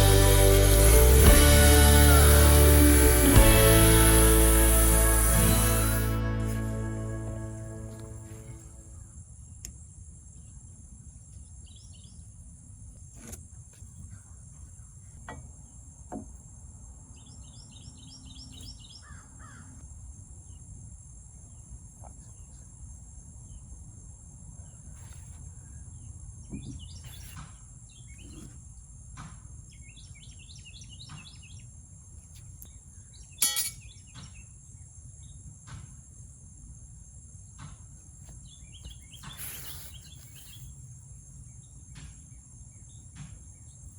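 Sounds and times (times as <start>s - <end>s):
high insect drone: 0.0s - 9.2s.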